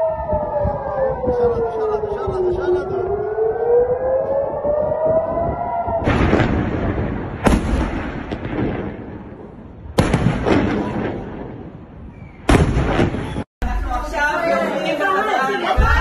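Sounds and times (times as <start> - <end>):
air-raid siren wailing: 0.0 - 7.2
heavy explosions: 5.0 - 13.5.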